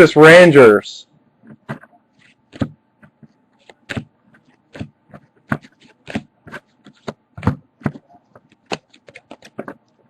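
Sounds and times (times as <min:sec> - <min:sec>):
trading cards flipped by hand: 0:01.4 - 0:09.9.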